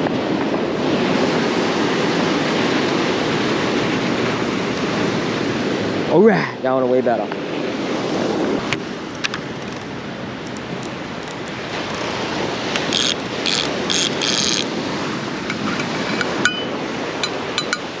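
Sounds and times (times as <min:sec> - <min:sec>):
wind: 0:00.0 - 0:18.0
fishing reel ratcheting: 0:09.2 - 0:14.8, 0:15.4 - 0:16.5.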